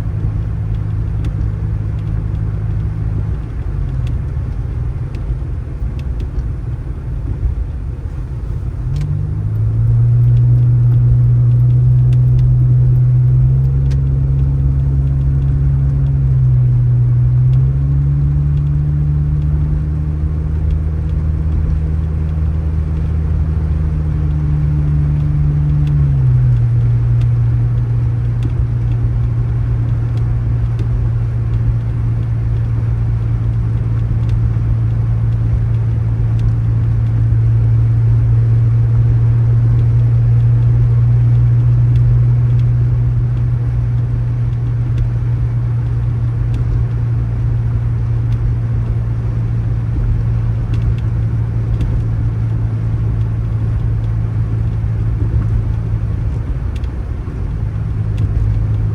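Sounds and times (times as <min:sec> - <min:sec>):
vehicle engine running: 0:00.0 - 0:58.9.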